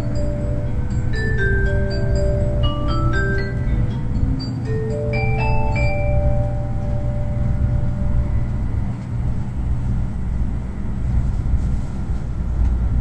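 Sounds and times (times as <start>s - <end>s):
in-car chime: 0.0s - 8.9s
train running low rumble: 0.0s - 13.0s.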